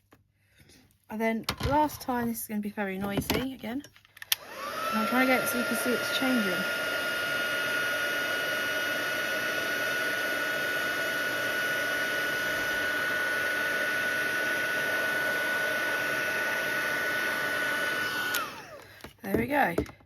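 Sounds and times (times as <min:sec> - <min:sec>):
heat gun running: 0:04.3 - 0:19.9.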